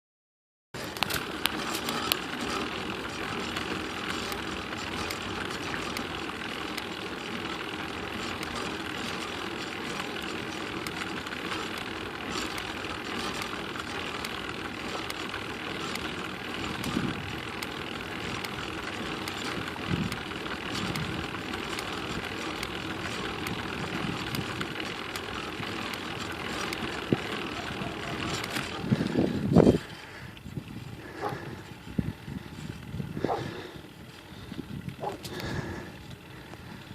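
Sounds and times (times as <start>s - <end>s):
vehicle clicking: 0.8s - 36.9s
vehicle running noise: 0.8s - 36.9s.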